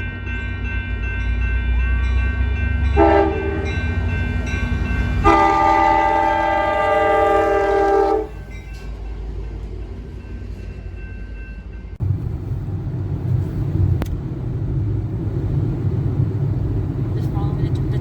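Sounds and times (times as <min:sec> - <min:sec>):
locomotive rumble: 0:00.0 - 0:18.0
train horn blasts: 0:02.9 - 0:04.0, 0:05.0 - 0:08.5.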